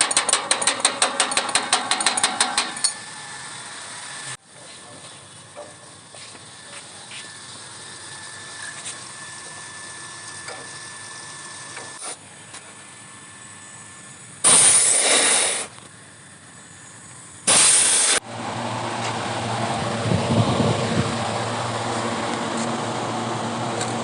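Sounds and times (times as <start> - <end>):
pressurized gas hissing: 14.4 - 15.8, 17.4 - 18.2.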